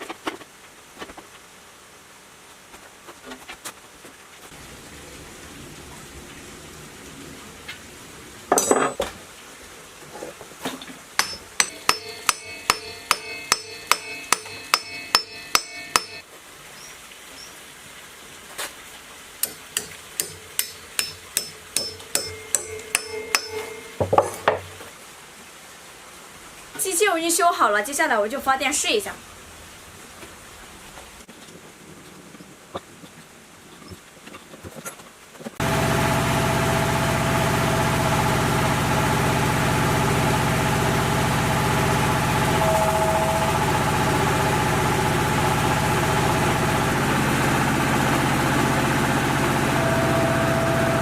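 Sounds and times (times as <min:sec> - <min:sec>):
hammer striking ringing metal: 0:11.2 - 0:16.2, 0:19.4 - 0:24.6, 0:42.5 - 0:44.2.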